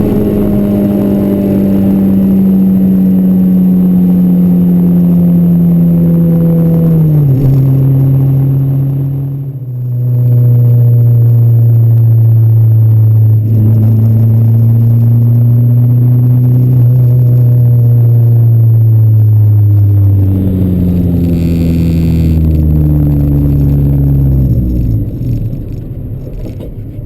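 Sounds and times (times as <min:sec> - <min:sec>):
car engine and exhaust under load: 0:00.0 - 0:27.0.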